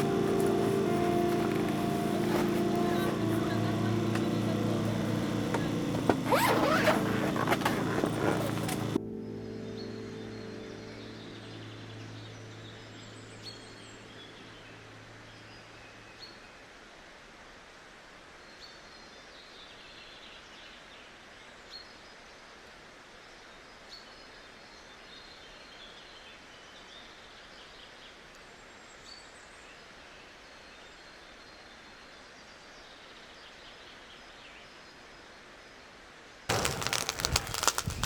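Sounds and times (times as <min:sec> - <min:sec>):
steady hiss: 0:00.0 - 0:09.0.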